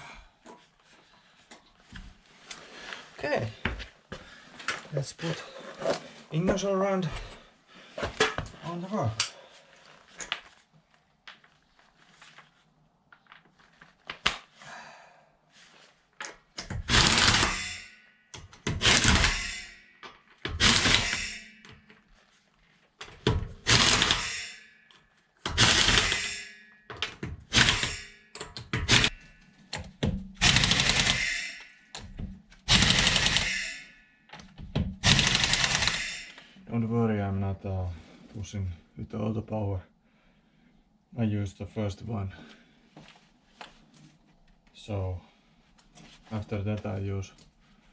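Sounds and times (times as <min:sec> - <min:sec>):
impact wrench hammering: 0:16.6 - 0:21.9, 0:23.2 - 0:24.7, 0:25.4 - 0:36.4.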